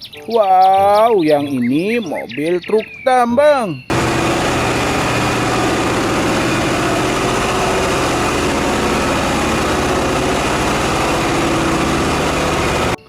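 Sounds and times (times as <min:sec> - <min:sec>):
pressure washer running: 0:03.9 - 0:13.0.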